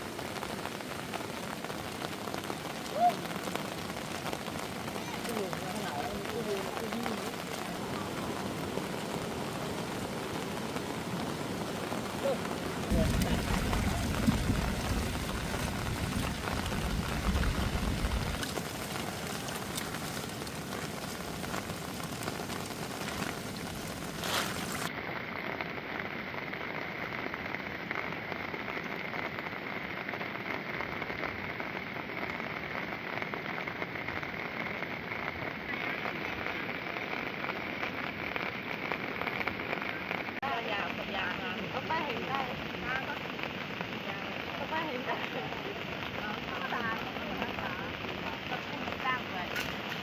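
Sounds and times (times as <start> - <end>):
heavy rain falling: 0.0 - 50.0
low rumble: 12.9 - 24.9.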